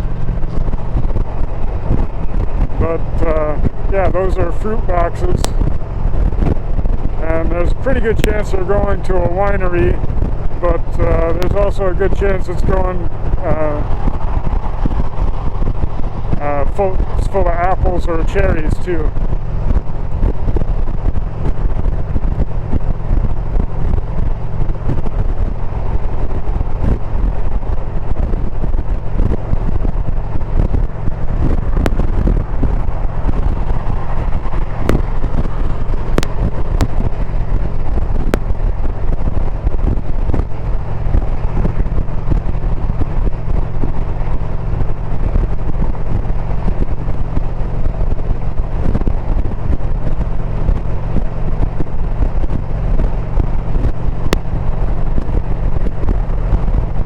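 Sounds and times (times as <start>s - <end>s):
motorcycle engine running: 0.0s - 57.0s
wind rushing over microphone: 0.0s - 57.0s.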